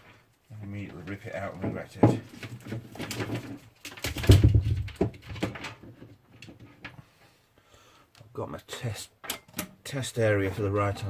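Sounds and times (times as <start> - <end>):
computer handling knocks and clatter: 1.6 - 7.0.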